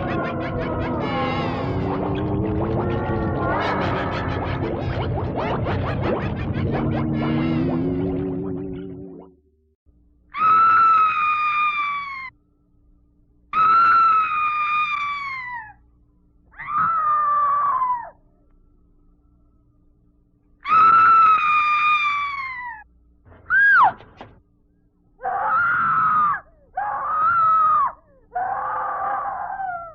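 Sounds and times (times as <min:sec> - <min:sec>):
high-pitched screams: 0:10.4 - 0:12.3, 0:13.6 - 0:15.8, 0:16.6 - 0:18.2, 0:20.6 - 0:22.8, 0:25.2 - 0:29.9.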